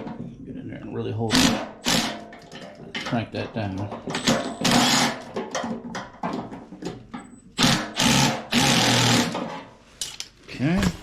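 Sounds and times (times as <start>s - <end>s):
cordless drill running: 7.6s - 9.3s.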